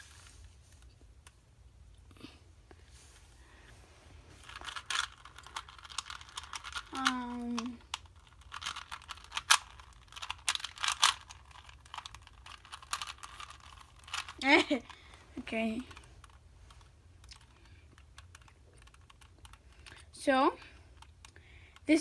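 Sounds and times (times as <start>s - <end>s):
plastic puzzle cube clicking: 4.5s - 15.2s, 15.8s - 20.1s, 20.8s - 21.8s.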